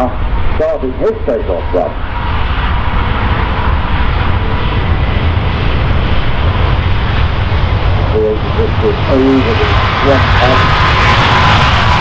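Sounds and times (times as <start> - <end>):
jet airliner taking off: 0.0 - 12.0.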